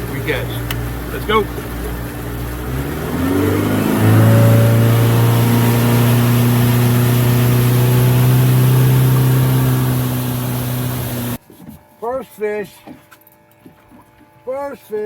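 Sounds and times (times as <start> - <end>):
motorboat engine: 0.0 - 11.4.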